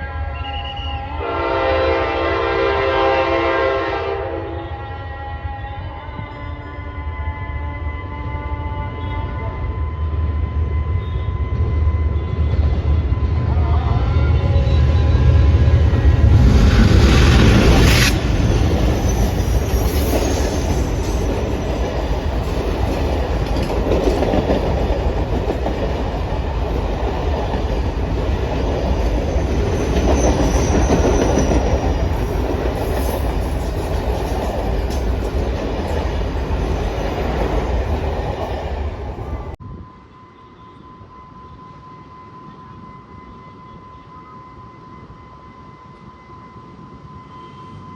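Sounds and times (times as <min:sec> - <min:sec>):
train rumbling past: 0:00.0 - 0:47.9
faint high wheel squeal: 0:18.1 - 0:21.9, 0:29.3 - 0:32.1, 0:39.3 - 0:47.9.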